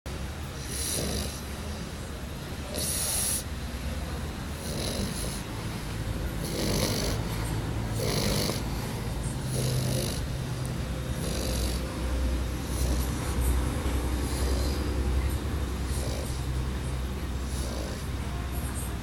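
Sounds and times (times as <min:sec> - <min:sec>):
pet snoring: 0:00.6 - 0:01.5, 0:02.7 - 0:03.5, 0:04.5 - 0:05.5, 0:06.4 - 0:10.4, 0:11.1 - 0:18.4.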